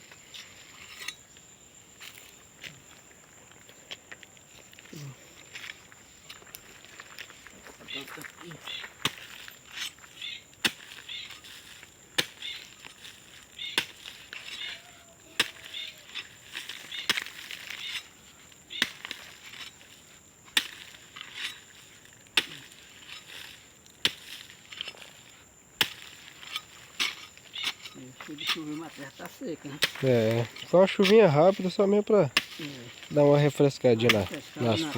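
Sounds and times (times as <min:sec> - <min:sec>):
soil scraping: 0:00.0 - 0:03.0, 0:04.6 - 0:34.9
hoe chopping into dry ground: 0:08.7 - 0:10.0, 0:10.6 - 0:14.8, 0:15.4 - 0:29.1, 0:29.7 - 0:31.4, 0:32.2 - 0:34.9.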